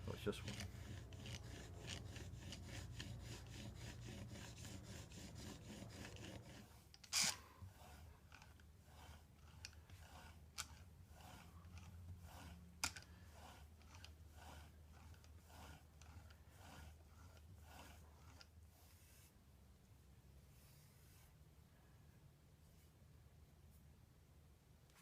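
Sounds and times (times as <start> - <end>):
chisel rubbing on sharpening stone: 0.0 - 18.5.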